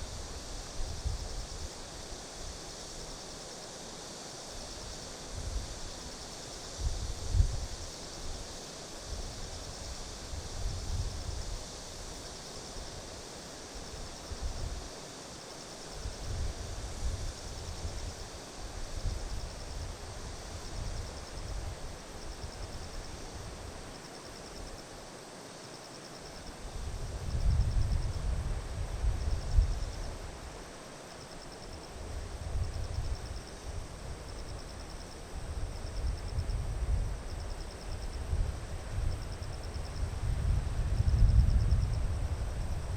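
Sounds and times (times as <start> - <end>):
insects trilling: 0.0 - 42.9
wind gusting on microphone: 35.4 - 42.9.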